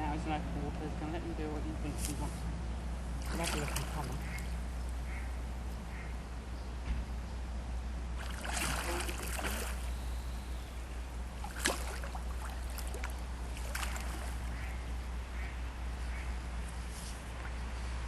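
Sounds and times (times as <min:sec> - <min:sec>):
river water splashing: 0:02.9 - 0:06.0, 0:08.0 - 0:15.5.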